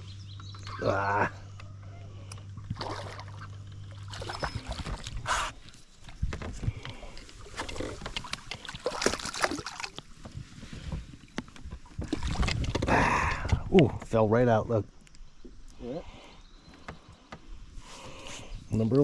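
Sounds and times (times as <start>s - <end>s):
steady low hum: 0.0s - 8.9s.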